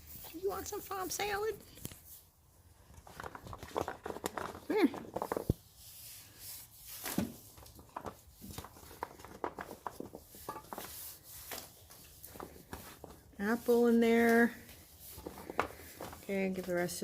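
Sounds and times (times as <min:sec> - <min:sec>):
goats crunching food: 0:07.6 - 0:10.4.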